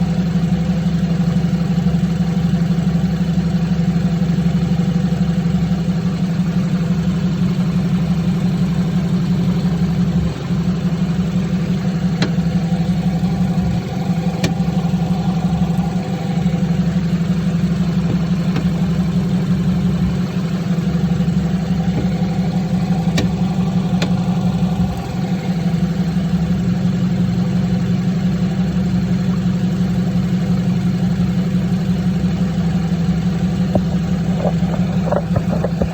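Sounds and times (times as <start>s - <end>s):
car engine idling: 0.0s - 35.9s
sharp steering clicks: 7.4s - 26.0s, 33.4s - 35.9s.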